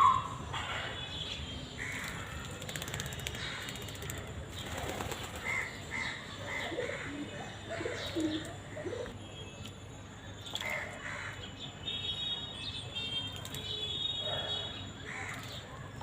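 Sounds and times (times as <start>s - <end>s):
pigeon cooing: 6.4s - 9.1s.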